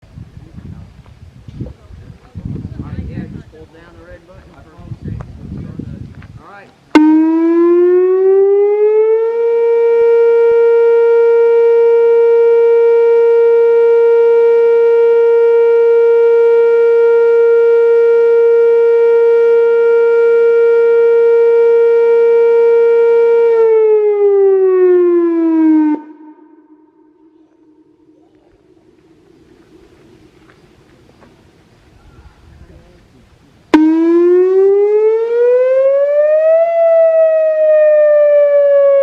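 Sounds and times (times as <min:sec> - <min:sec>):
electronic warning siren: 0:07.0 - 0:31.5, 0:33.7 - 0:39.0.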